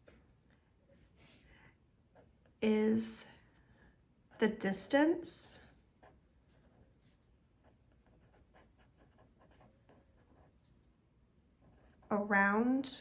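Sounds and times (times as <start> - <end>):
pen scratching while writing: 6.0 - 10.9, 11.6 - 12.1.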